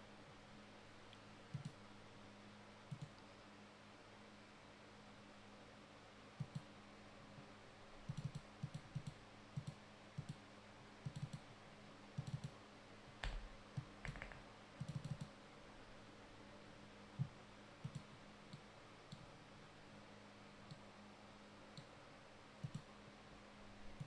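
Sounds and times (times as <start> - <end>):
faint scattered clicks: 1.1 - 1.8, 2.9 - 3.3, 6.4 - 6.7, 8.1 - 10.4, 11.0 - 11.5, 12.2 - 12.6, 13.2 - 15.4, 17.2 - 19.3, 22.6 - 22.9.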